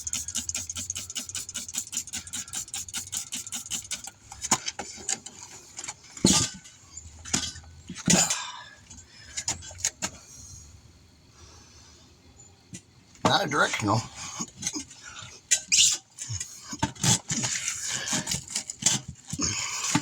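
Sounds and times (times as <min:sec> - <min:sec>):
rattle of clicks: 0:00.0 - 0:06.0.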